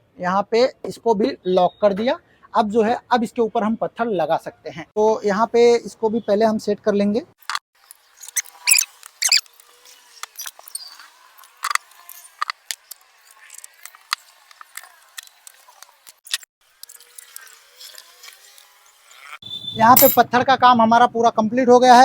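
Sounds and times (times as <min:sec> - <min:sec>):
sharp clicks and metallic clinks: 0:20.0 - 0:20.2.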